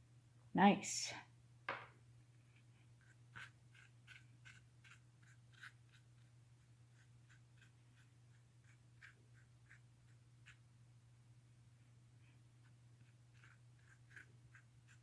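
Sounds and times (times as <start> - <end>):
low steady hum: 0.0 - 15.0
paintbrush strokes on canvas: 12.2 - 15.0.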